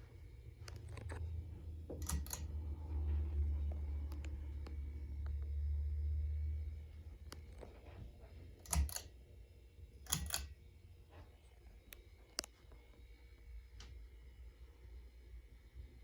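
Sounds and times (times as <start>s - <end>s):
ceiling fan hum: 0.0s - 16.0s
sharp clicks: 2.0s - 2.5s, 8.6s - 9.1s, 10.1s - 10.5s.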